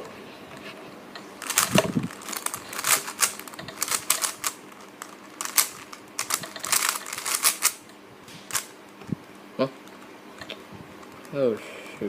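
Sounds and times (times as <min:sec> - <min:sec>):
puzzle cube plastic clicks: 0:01.4 - 0:07.8.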